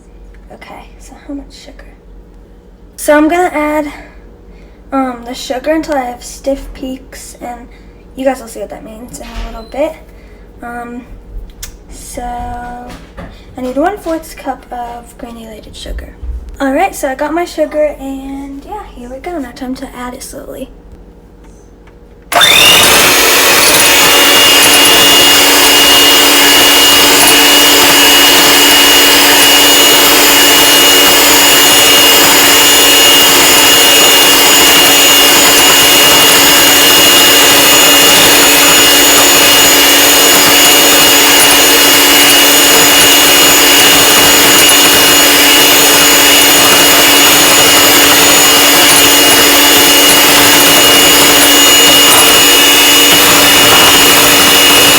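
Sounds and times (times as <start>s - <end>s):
electric mixer running: 22.3s - 54.9s.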